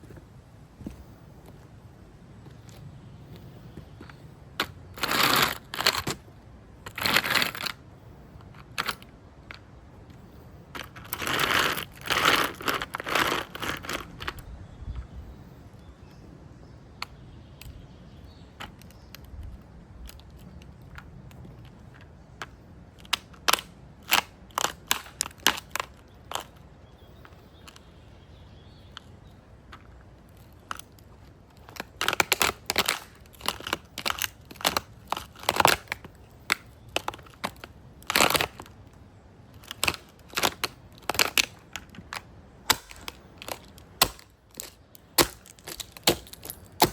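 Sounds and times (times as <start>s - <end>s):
toy car crunching and cracking: 2.6s - 14.5s, 18.6s - 27.9s, 28.9s - 46.9s
plastic snapping: 29.7s - 46.9s.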